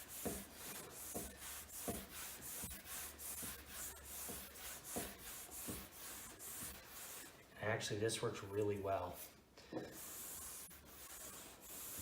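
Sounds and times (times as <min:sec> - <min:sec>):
brush scrubbing waxed board: 0:00.0 - 0:07.4, 0:09.9 - 0:12.0
soft knocks of brush: 0:04.2 - 0:06.8.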